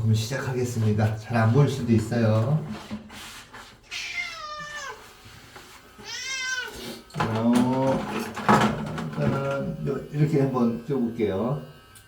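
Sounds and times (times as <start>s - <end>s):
cat meowing: 3.8s - 5.1s, 6.0s - 6.8s.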